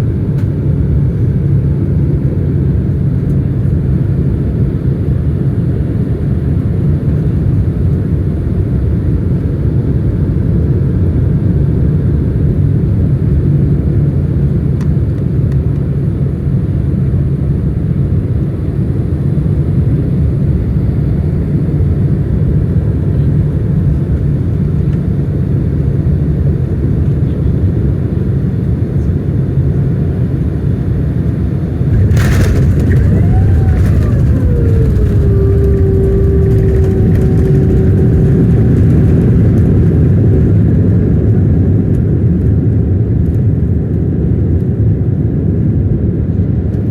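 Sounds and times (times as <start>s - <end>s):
jet airliner roar: 31.6s - 42.5s
landing gear rattling jolt: 31.9s - 38.8s.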